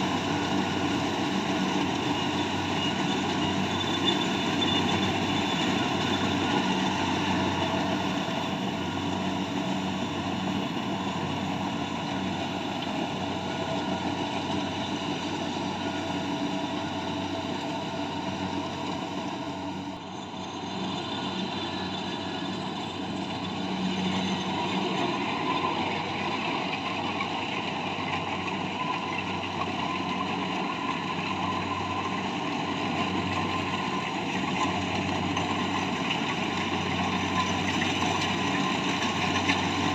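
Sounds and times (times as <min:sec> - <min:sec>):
harvesting machine engine running: 0:00.0 - 0:39.9.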